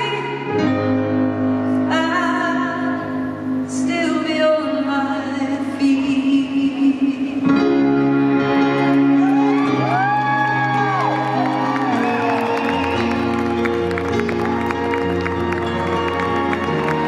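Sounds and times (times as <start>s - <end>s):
crowd whooping: 9.1s - 17.0s.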